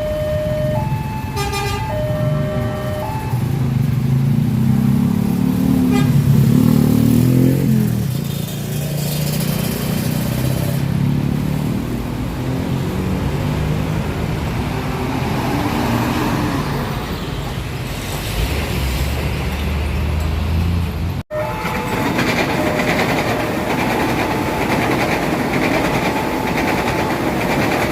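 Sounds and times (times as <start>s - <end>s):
road traffic engines: 0.0s - 27.9s
motorcycles: 2.2s - 16.9s.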